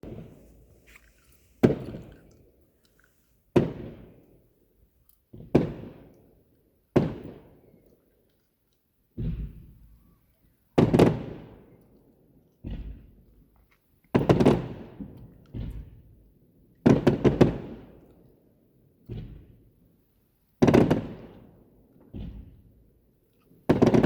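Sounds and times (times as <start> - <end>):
fireworks bangs with echo: 0.0 - 0.8, 1.6 - 2.3, 3.5 - 4.4, 5.3 - 6.2, 6.9 - 7.6, 9.2 - 10.0, 10.8 - 11.7, 12.6 - 13.2, 14.2 - 16.2, 16.8 - 18.1, 19.1 - 19.7, 20.6 - 22.9, 23.6 - 24.0.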